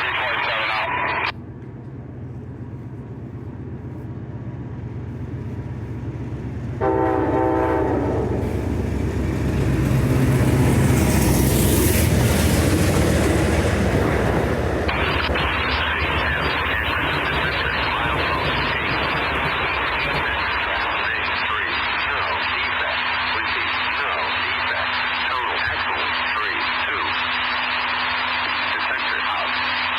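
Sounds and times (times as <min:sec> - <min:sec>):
diesel train rumble: 0:01.3 - 0:28.7
train horn blast: 0:06.8 - 0:08.7
wheels clacking over rails: 0:08.5 - 0:20.5.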